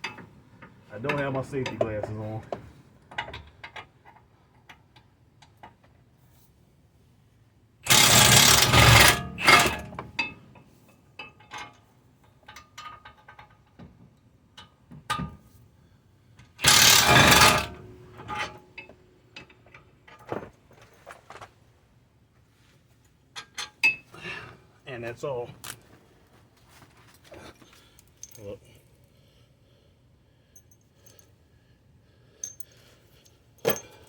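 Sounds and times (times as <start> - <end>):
impact wrench hammering: 7.9 - 10.0, 16.6 - 17.8
tools clicking and clinking: 32.4 - 34.0.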